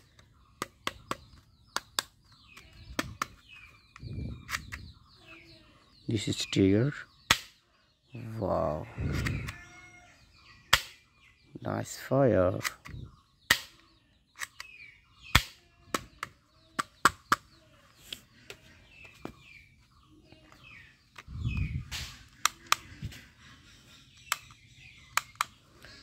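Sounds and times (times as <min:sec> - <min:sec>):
birds chirping faintly: 0:00.0 - 0:26.0
toy gun clicks and snaps: 0:24.3 - 0:25.6.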